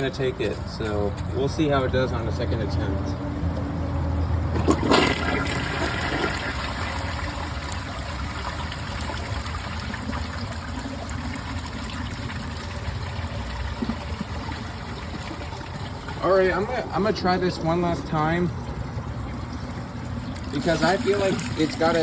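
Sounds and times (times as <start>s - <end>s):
toilet flushing: 4.4s - 22.0s.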